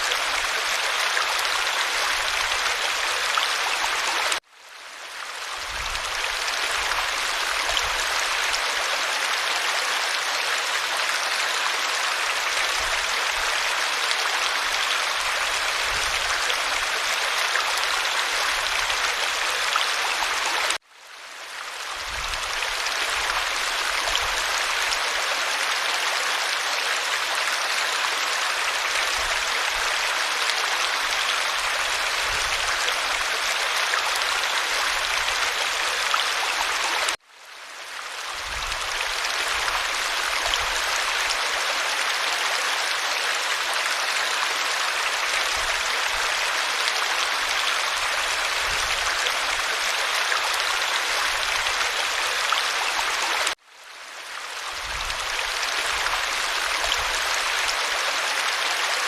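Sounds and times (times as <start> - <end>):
flowing stream rushing: 0.0 - 20.8, 21.5 - 59.0.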